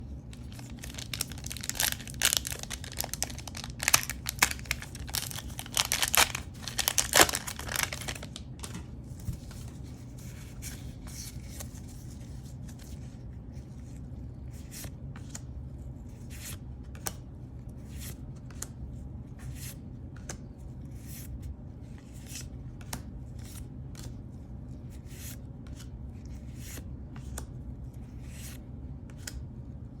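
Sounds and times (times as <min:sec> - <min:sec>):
steady low hum: 0:00.0 - 0:30.0
wrapper torn open crinkling: 0:00.3 - 0:08.6
cards being flipped clicks: 0:26.6 - 0:27.5, 0:29.1 - 0:29.4.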